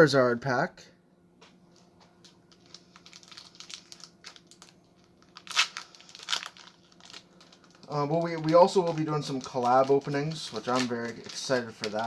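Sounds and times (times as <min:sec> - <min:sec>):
foil wrapper crinkling: 0:01.8 - 0:12.0
foil wrapper ripping: 0:02.5 - 0:12.0.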